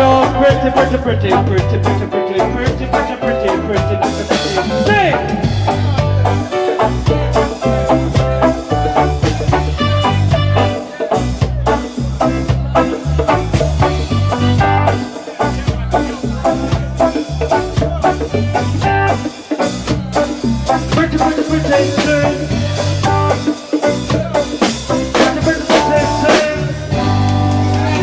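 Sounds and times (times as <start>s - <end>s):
live reggae band playing: 0.0s - 28.0s.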